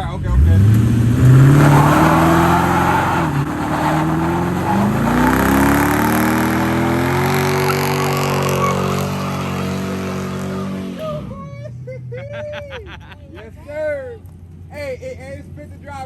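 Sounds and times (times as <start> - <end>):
engine revving hard: 0.0 - 11.3
spinning tyres hissing: 0.6 - 11.2.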